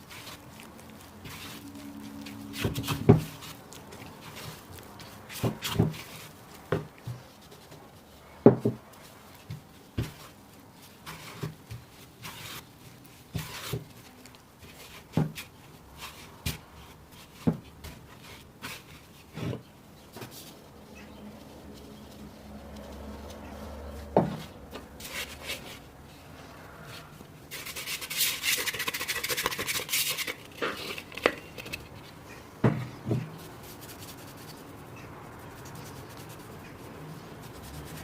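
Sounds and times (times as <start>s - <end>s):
rubbing: 26.9s - 32.2s, 33.2s - 38.0s.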